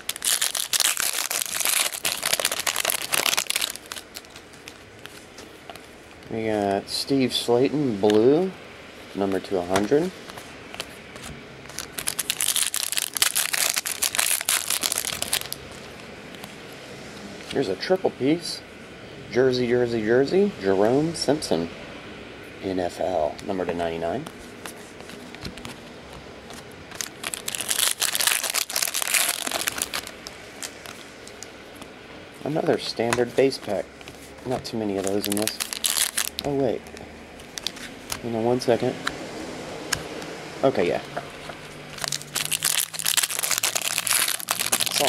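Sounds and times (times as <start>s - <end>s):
wrapper crinkling: 0.0s - 5.3s, 11.7s - 15.9s, 26.5s - 31.5s, 33.6s - 38.2s, 41.9s - 45.0s.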